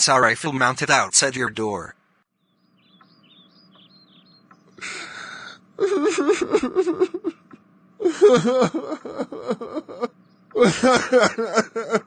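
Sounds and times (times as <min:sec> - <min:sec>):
breathy gasp: 0:04.8 - 0:05.6
character whimpering and crying: 0:08.0 - 0:11.0.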